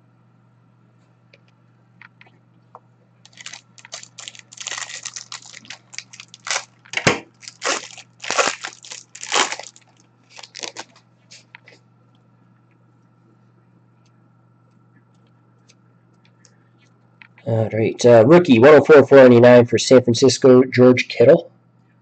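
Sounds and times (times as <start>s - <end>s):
plastic wrappers crinkling and tearing: 3.2s - 11.0s.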